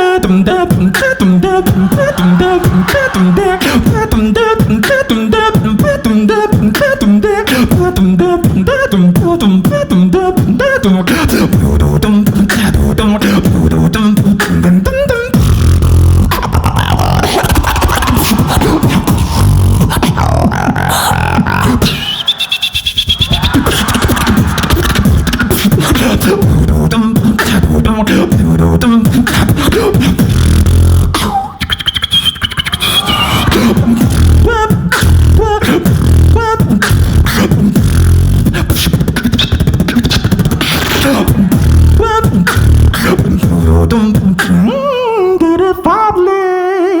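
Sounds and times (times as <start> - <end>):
person beatboxing: 0.0 - 47.0
wavering voiced tone: 31.2 - 35.6.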